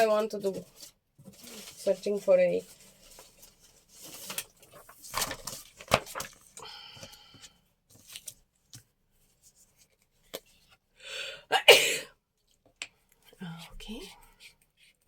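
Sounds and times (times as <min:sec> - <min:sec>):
paper rustling: 0:00.3 - 0:10.5.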